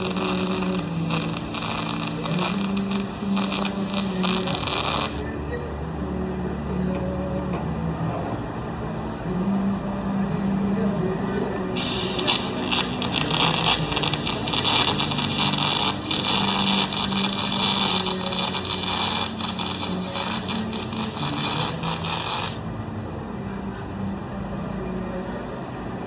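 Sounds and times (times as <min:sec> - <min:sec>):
welding arc hissing and crackling: 0:00.0 - 0:05.2, 0:11.8 - 0:22.6
welding machine low hum: 0:00.0 - 0:05.6, 0:11.8 - 0:22.8.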